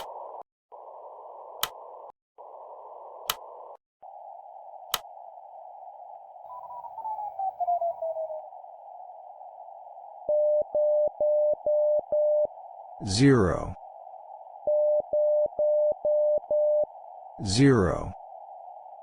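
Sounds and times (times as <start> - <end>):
click: 1.6 - 1.8, 3.2 - 3.5, 4.9 - 5.1.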